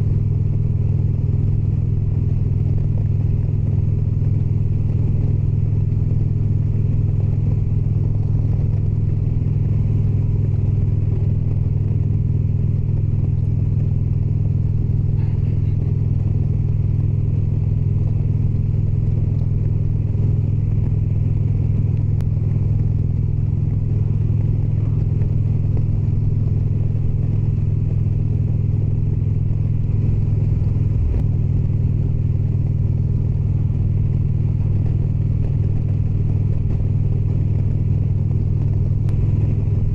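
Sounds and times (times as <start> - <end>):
motorcycle engine droning: 0.0 - 39.9.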